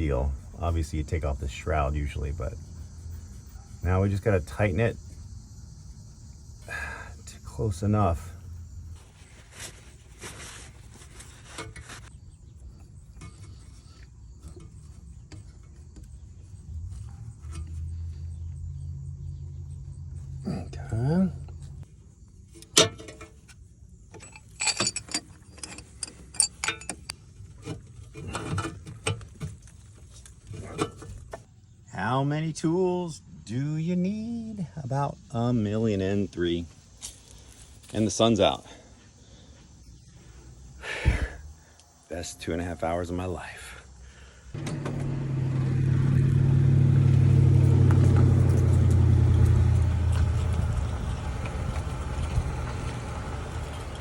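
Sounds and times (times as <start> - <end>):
car engine droning while driving: 0.1 - 9.2, 16.1 - 21.8, 44.5 - 54.0
metal hand tools clinking: 24.2 - 27.2.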